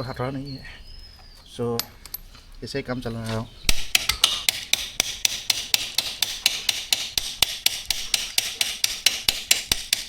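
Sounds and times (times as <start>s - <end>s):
rapid metal tapping: 3.7s - 10.0s.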